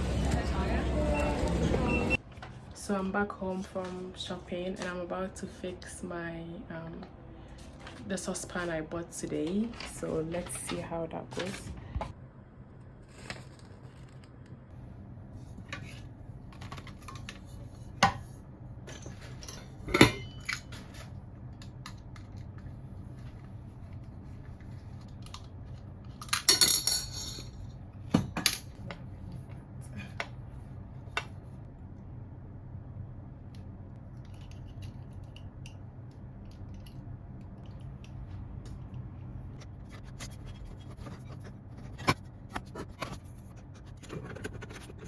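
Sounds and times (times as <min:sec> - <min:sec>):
steady low hum: 0:00.0 - 0:45.0
pots and utensils clinking: 0:19.0 - 0:20.8.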